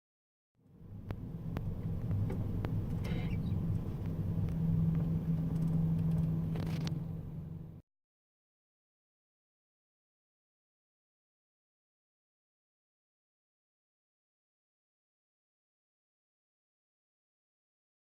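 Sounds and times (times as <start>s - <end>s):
train car rumbling on tracks: 0.7s - 7.8s.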